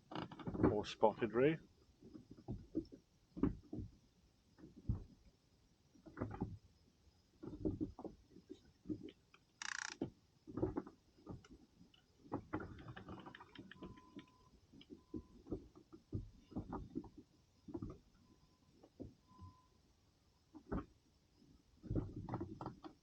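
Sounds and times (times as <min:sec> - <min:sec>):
soft knocks and bumps in boat: 0:00.0 - 0:09.3, 0:10.0 - 0:19.6, 0:20.4 - 0:23.0
sharp clicks: 0:09.6 - 0:10.0.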